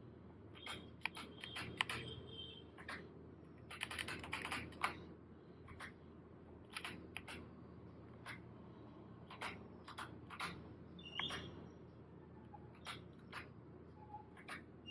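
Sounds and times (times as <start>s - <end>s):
faint low hum: 0.0s - 14.9s
keyboard keystrokes: 0.6s - 2.1s, 3.7s - 5.0s.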